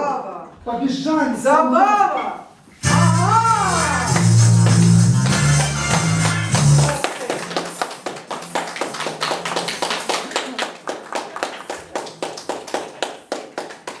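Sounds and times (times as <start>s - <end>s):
hands clapping in time: 4.0s - 14.0s.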